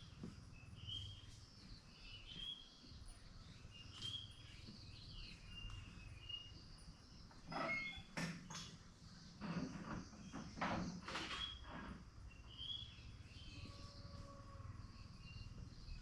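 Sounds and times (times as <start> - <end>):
small birds chirping: 0.0 - 16.0
knocking and rustling: 7.6 - 12.1.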